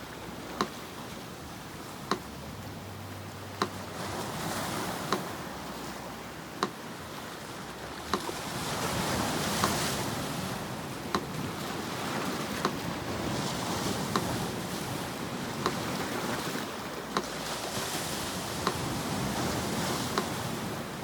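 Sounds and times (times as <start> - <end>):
sea surf washing in: 0.0 - 21.0
metronome ticking: 0.1 - 7.2, 8.0 - 8.3, 11.0 - 11.5, 12.5 - 12.9, 18.6 - 20.4.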